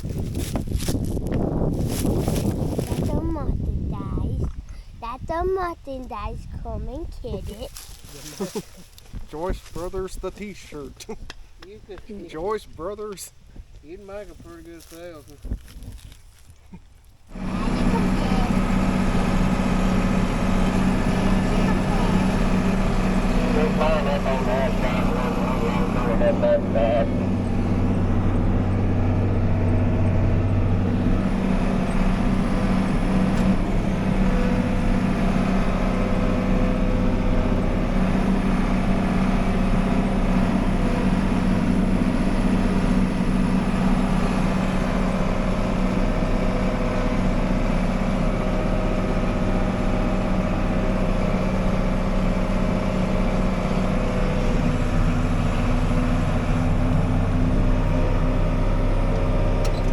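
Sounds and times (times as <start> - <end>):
combine harvester engine drone: 17.2 - 59.9
low hum: 17.3 - 47.8.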